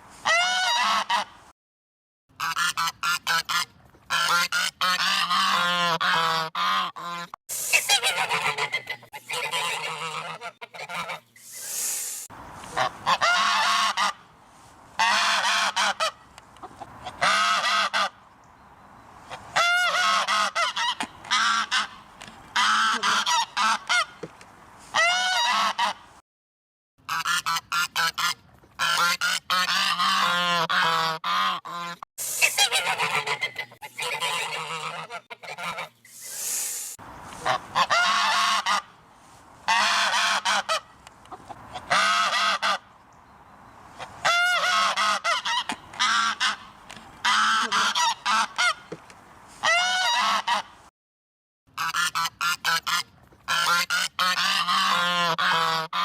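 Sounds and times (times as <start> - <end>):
geese honking: 0.2 - 1.3, 2.4 - 11.4, 12.6 - 14.3, 15.0 - 18.2, 19.3 - 24.2, 27.1 - 36.0, 37.3 - 39.0, 39.7 - 42.9, 44.2 - 48.9, 49.6 - 50.7, 51.8 - 56.0.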